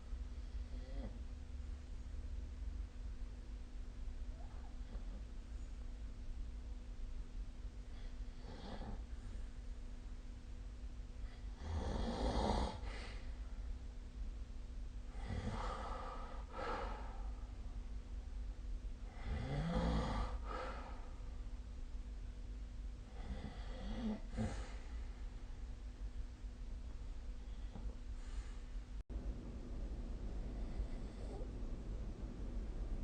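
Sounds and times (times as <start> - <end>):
person snoring: 8.0 - 9.1, 11.3 - 13.2, 19.1 - 21.0, 23.1 - 24.8.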